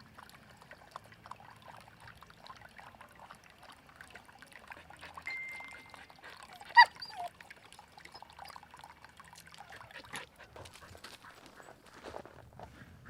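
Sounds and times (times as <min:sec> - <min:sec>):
dog yelping: 0:06.4 - 0:07.3.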